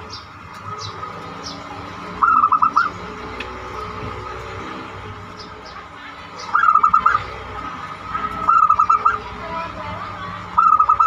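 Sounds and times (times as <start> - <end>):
dove cooing: 2.1 - 3.4, 6.5 - 7.4, 8.2 - 9.4, 10.5 - 11.0.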